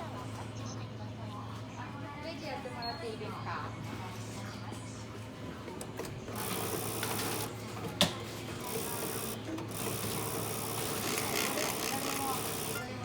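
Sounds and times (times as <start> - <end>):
cash machine whirring: 5.9 - 13.0.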